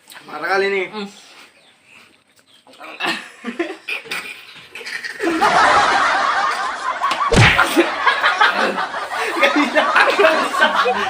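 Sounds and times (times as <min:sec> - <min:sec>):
people laughing: 0:02.9 - 0:11.0
thump: 0:07.3 - 0:07.7.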